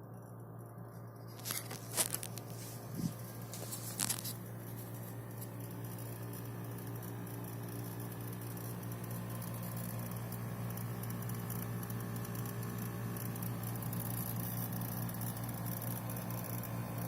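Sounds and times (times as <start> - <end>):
dehumidifier humming: 0.0 - 17.0
sharp crackling clicks: 1.4 - 2.6.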